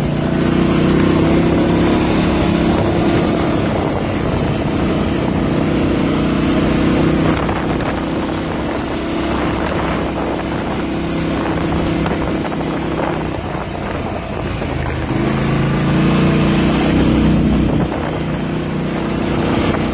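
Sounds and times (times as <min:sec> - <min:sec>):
quad bike engine running: 0:00.0 - 0:19.9.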